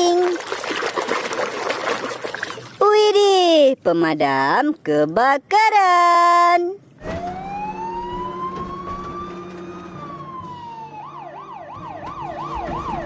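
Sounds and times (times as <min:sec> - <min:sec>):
fire engine siren: 0:07.0 - 0:13.0.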